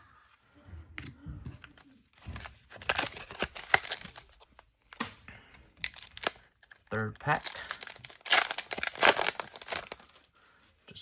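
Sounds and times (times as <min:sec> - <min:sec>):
foil wrapper crinkling and tearing: 0:02.2 - 0:10.3.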